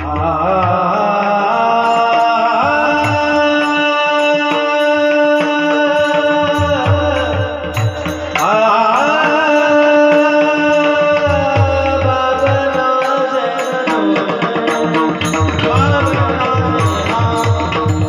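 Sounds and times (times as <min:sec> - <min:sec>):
hand drum rhythm: 0:06.0 - 0:09.4, 0:10.2 - 0:18.0.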